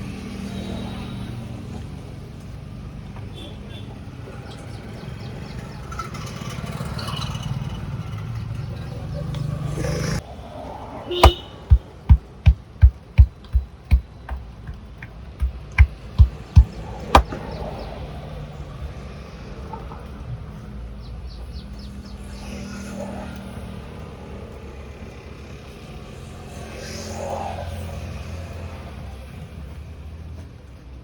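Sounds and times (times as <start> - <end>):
street traffic noise: 0.0 - 31.0
hands thudding on body in massage: 11.2 - 17.4.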